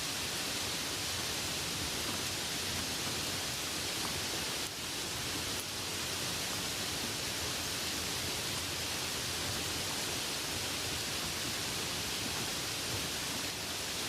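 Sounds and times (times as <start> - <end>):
light rain falling: 0.0 - 14.0.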